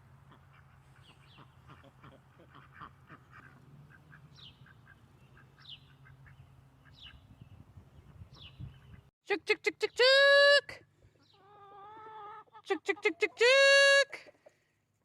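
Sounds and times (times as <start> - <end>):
ducks quacking softly: 0.2 - 7.2.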